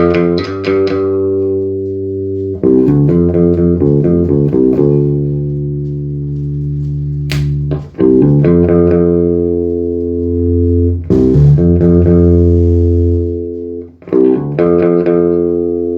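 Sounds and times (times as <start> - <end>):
electric bass notes: 0.0 - 15.9
sharp click: 7.3 - 7.8.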